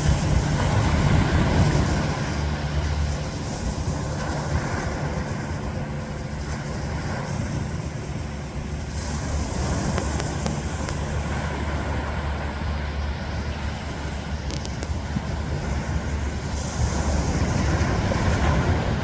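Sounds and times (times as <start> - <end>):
ocean surf washing: 0.0 - 19.0
wind rumble on microphone: 0.0 - 19.0.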